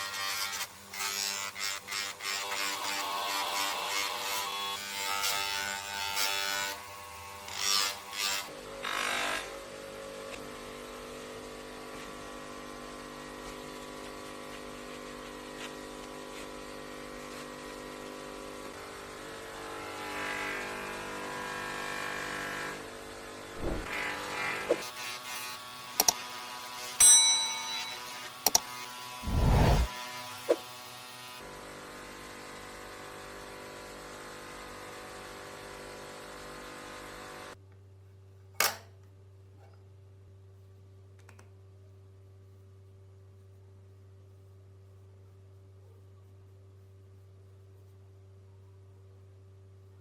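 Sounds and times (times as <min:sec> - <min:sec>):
small power tool motor running: 0:00.0 - 0:09.5
abrasive grinding contact: 0:29.2 - 0:29.9.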